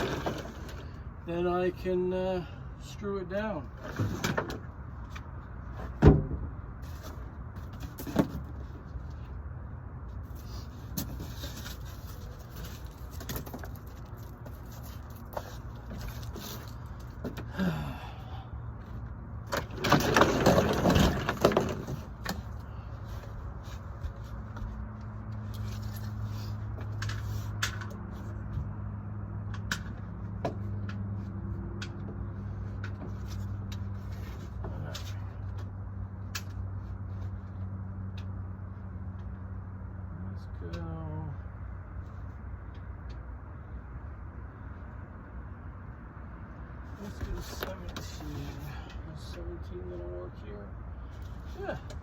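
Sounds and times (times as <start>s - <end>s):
boards scraping and rustling: 0.0s - 1.0s, 3.7s - 9.3s, 10.1s - 17.5s, 19.5s - 28.7s, 32.1s - 35.8s.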